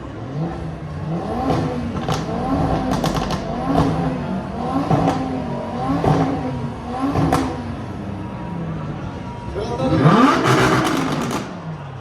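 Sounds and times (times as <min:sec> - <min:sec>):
car engine revving: 0:00.2 - 0:08.2, 0:09.8 - 0:11.8
exhaust cracks and pops: 0:02.0 - 0:03.9.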